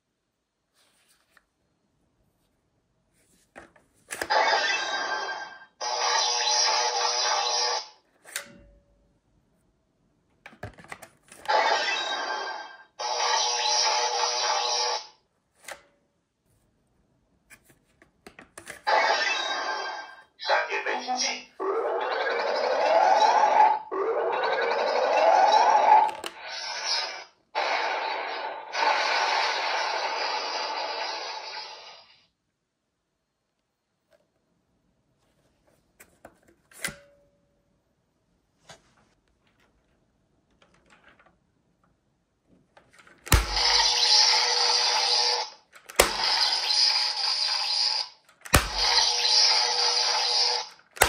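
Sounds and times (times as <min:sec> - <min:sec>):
toy sword electric hissing effect: 0:24.8 - 0:32.2, 0:43.4 - 0:50.7.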